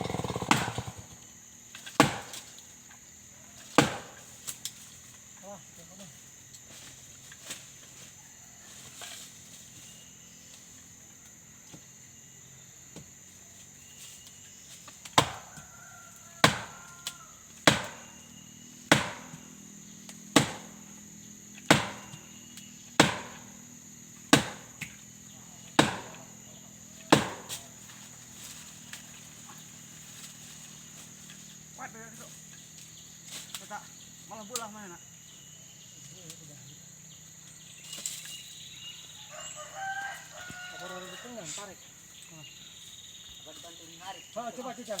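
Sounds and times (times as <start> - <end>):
high-pitched insect buzz: 0.0 - 45.0
heavy blows on wood: 18.9 - 19.4, 20.3 - 20.8, 21.7 - 22.3, 23.0 - 23.5, 24.3 - 24.9, 25.8 - 26.2.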